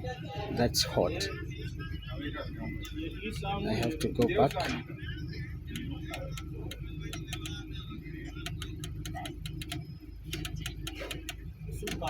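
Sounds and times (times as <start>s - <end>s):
steady low hum: 0.0s - 12.0s
temperature control dial clicking: 5.7s - 7.6s, 8.4s - 12.0s.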